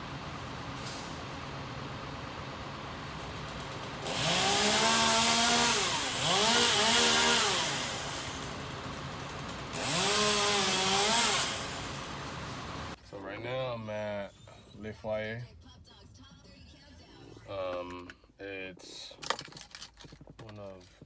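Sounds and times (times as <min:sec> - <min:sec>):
chainsaw revving: 0:03.1 - 0:13.0.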